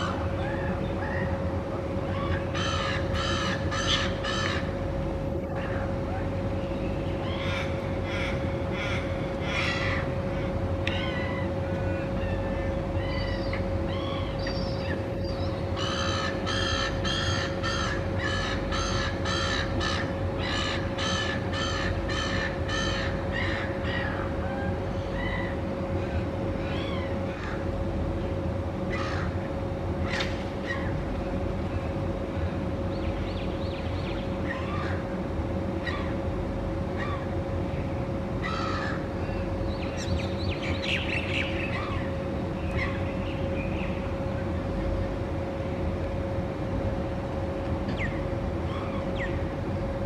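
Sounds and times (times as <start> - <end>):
ravens cawing: 0.0 - 4.9, 7.2 - 14.4, 15.7 - 27.8, 28.9 - 29.5, 34.4 - 35.1, 35.7 - 36.2, 36.9 - 37.4, 38.4 - 39.5
steady hum and low rumble: 0.0 - 50.0.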